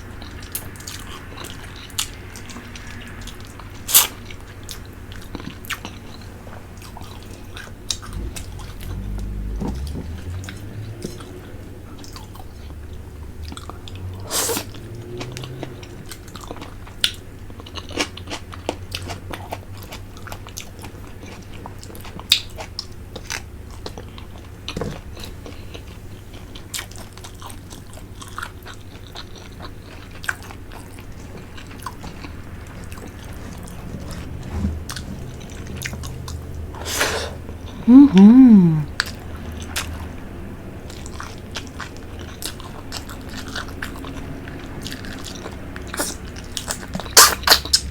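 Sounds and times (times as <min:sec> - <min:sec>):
person slurping and chewing: 0:30.9 - 0:38.9.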